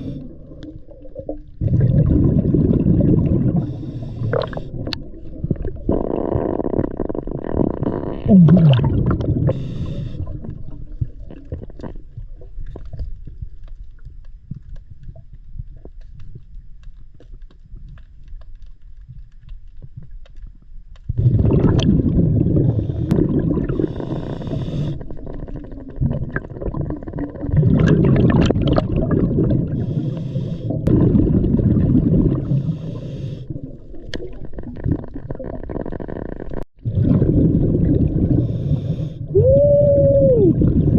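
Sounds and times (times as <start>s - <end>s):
diver breathing through regulator: 0.0s - 0.4s, 3.5s - 5.0s, 9.4s - 10.6s, 22.5s - 25.6s, 29.7s - 30.9s, 32.4s - 33.8s, 38.3s - 39.3s
exhaled bubbles bursting: 0.0s - 13.5s, 21.1s - 30.0s, 30.7s - 32.8s, 33.5s - 40.9s.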